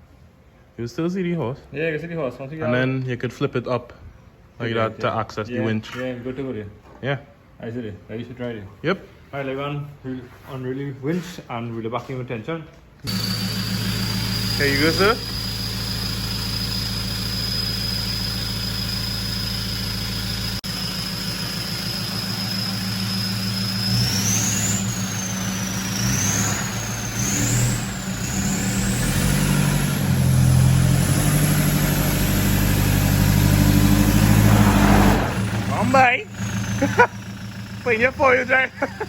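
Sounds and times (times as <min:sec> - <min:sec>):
high whine: 0:13.1 - 0:31.1
truck engine idling and revving: 0:13.1 - 0:39.0.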